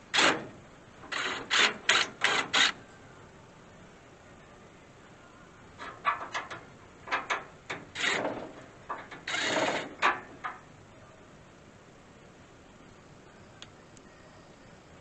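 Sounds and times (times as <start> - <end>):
power drill drilling metal: 0.1 - 0.5, 1.1 - 2.8, 7.9 - 10.1.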